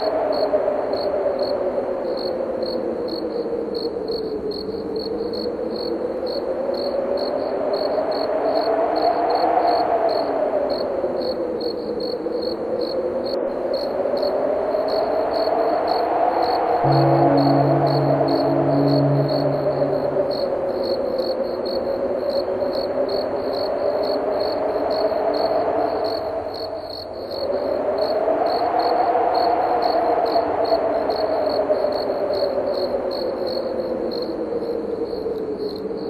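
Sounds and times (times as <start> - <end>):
crickets chirping: 0.0 - 36.0
wind howling: 12.6 - 23.0.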